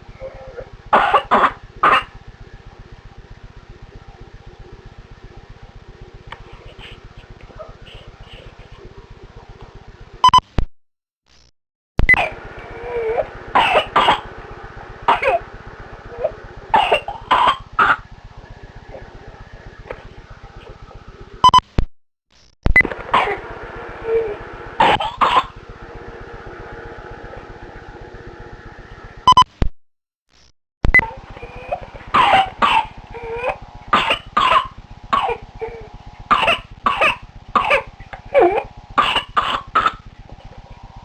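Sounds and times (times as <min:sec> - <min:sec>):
steady hum: 0:00.0 - 0:10.4, 0:12.0 - 0:21.6, 0:22.6 - 0:29.5, 0:30.8 - 0:41.0
child coughing: 0:01.0 - 0:02.1, 0:12.2 - 0:14.3, 0:15.1 - 0:15.4, 0:16.2 - 0:18.0, 0:23.1 - 0:23.4, 0:24.8 - 0:25.5, 0:31.4 - 0:40.0.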